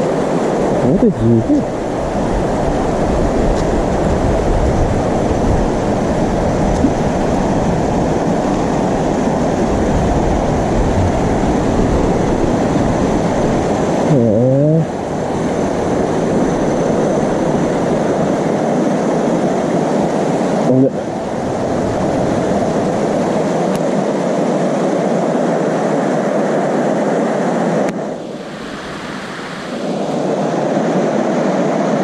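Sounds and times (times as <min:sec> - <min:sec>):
wind on microphone: 0:00.0 - 0:24.4.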